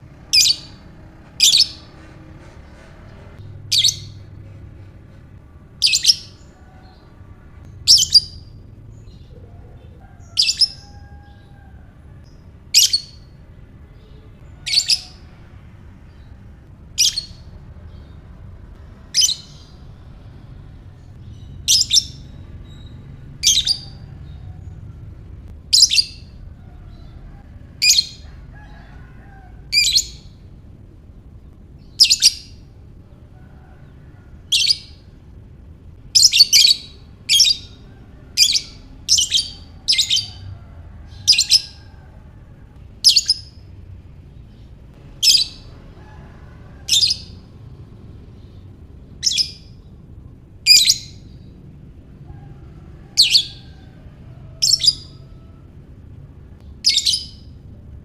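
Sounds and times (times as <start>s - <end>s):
bird chirping: 0.2s - 2.1s, 3.4s - 4.9s, 5.5s - 28.9s, 29.7s - 30.6s, 31.5s - 33.2s, 36.0s - 42.1s, 42.8s - 46.0s, 46.8s - 50.0s, 54.5s - 55.5s, 56.6s - 57.8s.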